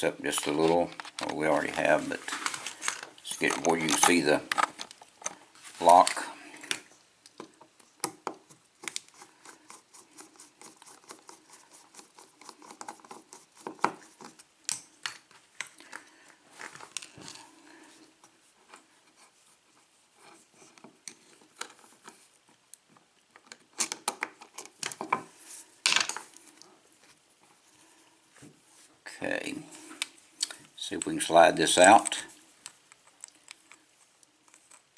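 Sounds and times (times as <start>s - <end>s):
lock parts clinking: 2.8s - 6.2s, 31.7s - 32.2s.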